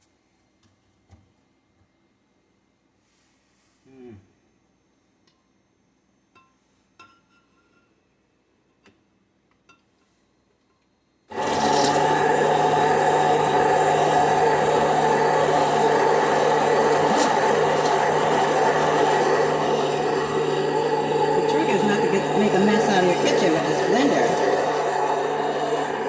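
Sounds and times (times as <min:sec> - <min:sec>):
immersion blender running: 0:11.3 - 0:26.0.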